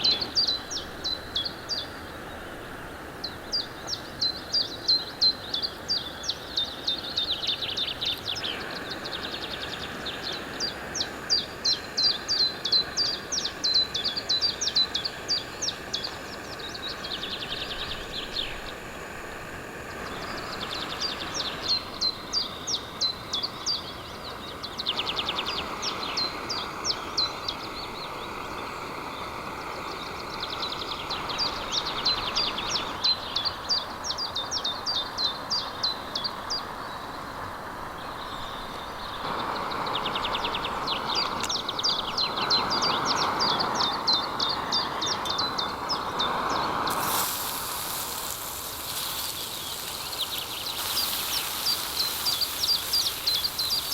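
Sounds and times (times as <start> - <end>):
songbird singing: 0.0 - 53.9
steady rushing hiss: 0.0 - 53.9
sharp bright hiss: 39.0 - 53.9.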